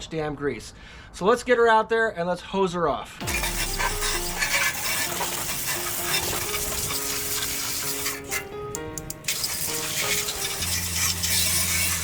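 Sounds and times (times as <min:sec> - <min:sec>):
background music: 0:03.2 - 0:12.0
hose spraying water: 0:03.2 - 0:12.0.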